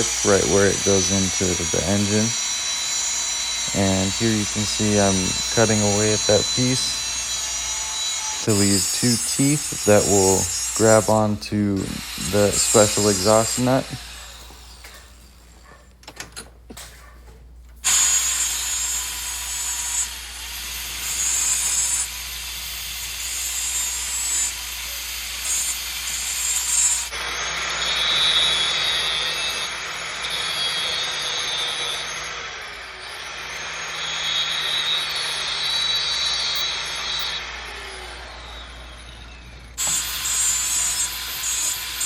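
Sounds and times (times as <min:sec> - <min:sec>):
power tool cutting metal: 0:00.0 - 0:15.4, 0:17.8 - 0:42.0.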